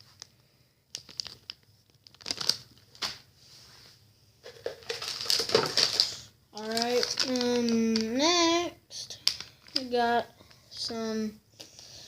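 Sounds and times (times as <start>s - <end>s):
plastic packaging crinkling: 0.9s - 3.2s, 4.4s - 8.2s, 9.1s - 10.5s.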